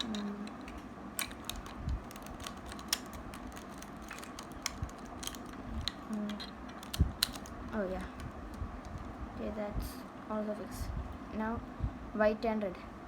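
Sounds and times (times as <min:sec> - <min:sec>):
plastic puzzle cube clicks: 0:00.0 - 0:07.6.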